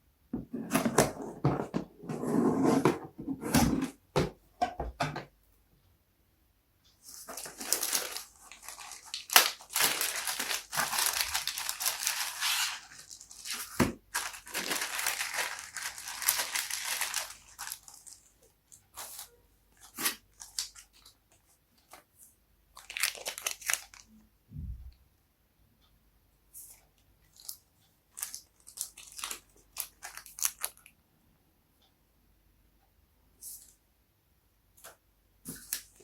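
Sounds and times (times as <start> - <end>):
packaging torn and crinkled: 7.3 - 18.4, 22.8 - 24.1, 28.2 - 30.8.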